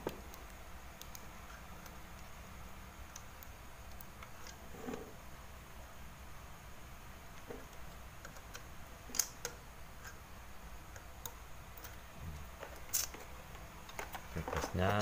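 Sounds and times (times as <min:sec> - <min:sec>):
faint background noise: 0:00.0 - 0:15.0.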